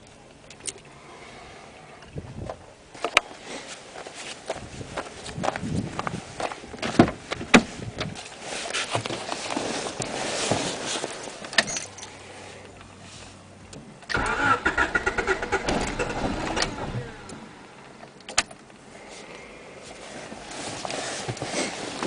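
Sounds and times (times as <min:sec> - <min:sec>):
car engine cranking: 0:14.1 - 0:18.6.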